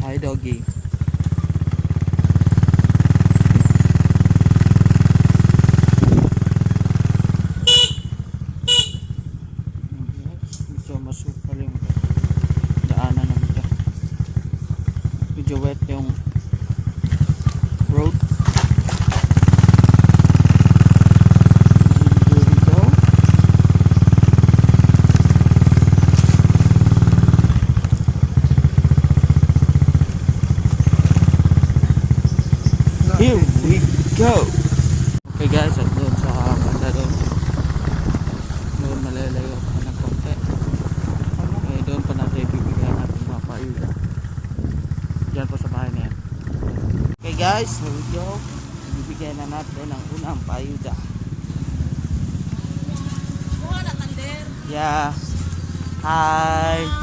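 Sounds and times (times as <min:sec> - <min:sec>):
motorcycle engine running: 0:00.0 - 0:57.0
short horn beeps: 0:07.7 - 0:09.3.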